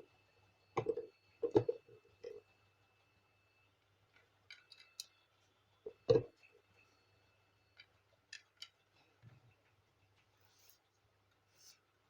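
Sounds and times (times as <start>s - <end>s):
small clicks of printer parts: 4.1s - 5.2s, 7.8s - 9.4s.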